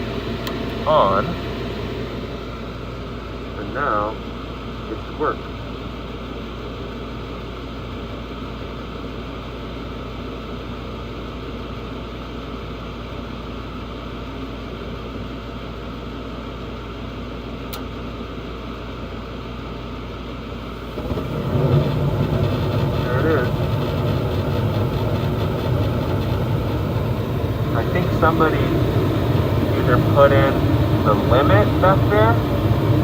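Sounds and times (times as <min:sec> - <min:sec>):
furnace motor hum: 0:00.0 - 0:10.8, 0:16.4 - 0:33.0
burner low rumble: 0:20.6 - 0:33.0.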